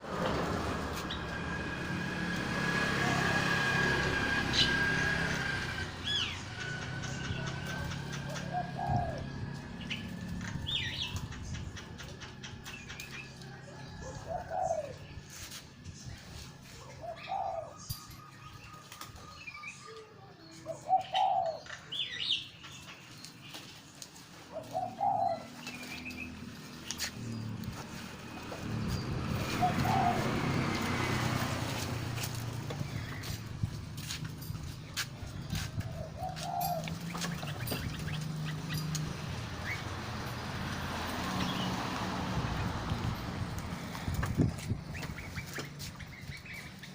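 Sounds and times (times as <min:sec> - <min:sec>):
songbirds chirping: 0:00.0 - 0:46.9
dove cooing: 0:07.7 - 0:09.8, 0:13.9 - 0:15.1, 0:16.8 - 0:17.9, 0:20.7 - 0:21.7, 0:24.5 - 0:26.0, 0:28.7 - 0:31.3, 0:35.8 - 0:39.0.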